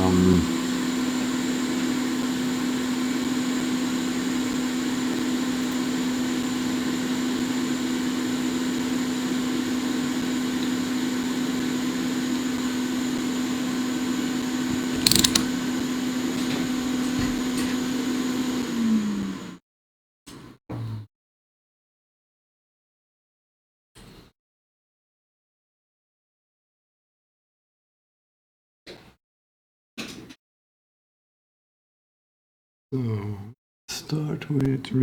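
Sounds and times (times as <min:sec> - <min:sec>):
electric blower fan humming: 0:14.7 - 0:15.6
brief clatter: 0:15.0 - 0:15.5.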